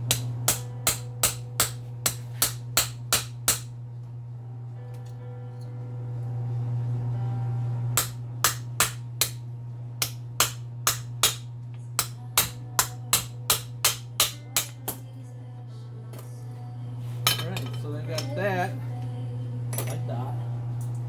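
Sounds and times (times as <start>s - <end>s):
low hum: 0.0s - 21.0s
hammer striking metal: 0.1s - 3.7s, 8.0s - 9.4s, 10.0s - 15.0s.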